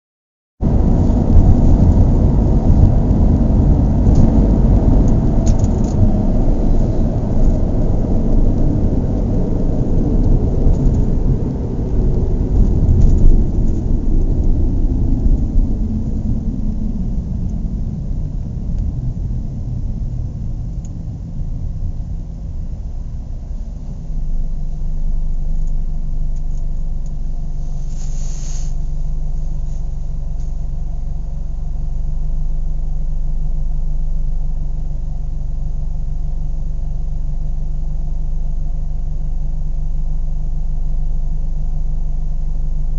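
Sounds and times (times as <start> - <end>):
car engine driving: 0.6 - 42.9
car engine idling: 0.6 - 42.9
road rumble: 0.6 - 42.9
brief hiss: 27.6 - 28.9.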